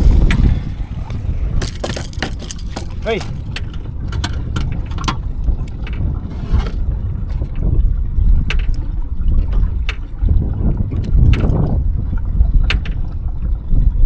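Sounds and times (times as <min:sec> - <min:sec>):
boat low rumble: 0:00.0 - 0:14.0
knocks clicks and scrapes: 0:01.6 - 0:03.6.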